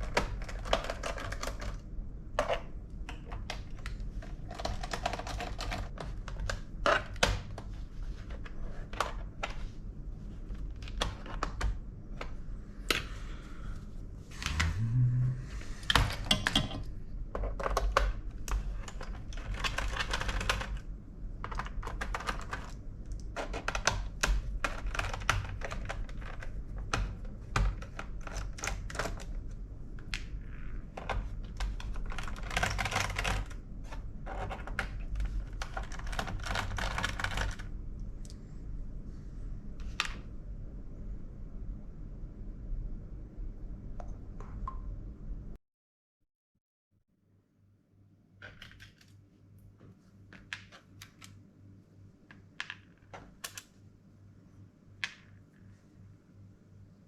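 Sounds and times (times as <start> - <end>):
low rising whirr: 14.3 - 15.8.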